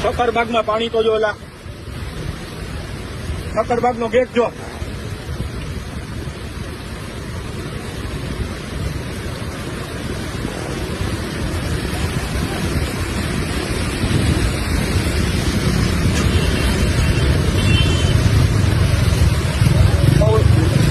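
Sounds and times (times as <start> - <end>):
floodwater rushing: 0.0 - 20.9
wind on microphone: 4.6 - 20.9.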